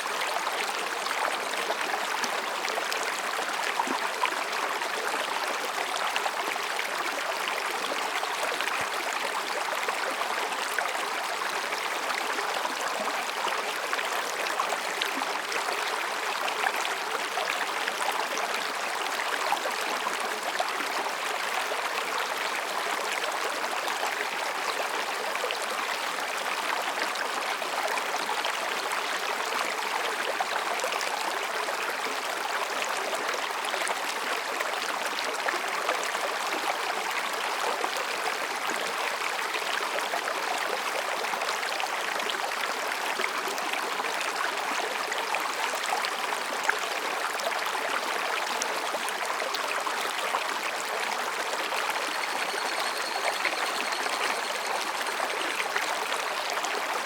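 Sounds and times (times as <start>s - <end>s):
stream babbling over rocks: 0.0s - 57.0s.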